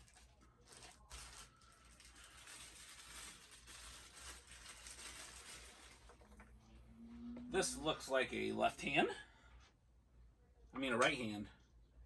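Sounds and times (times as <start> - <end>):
plastic packaging crinkling: 0.0 - 6.5.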